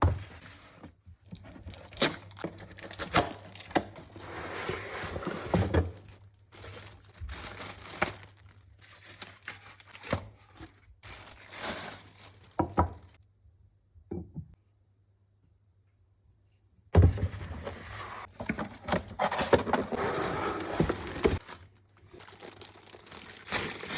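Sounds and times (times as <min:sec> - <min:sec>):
packaging tearing and crinkling: 0:01.7 - 0:13.2, 0:18.2 - 0:23.9.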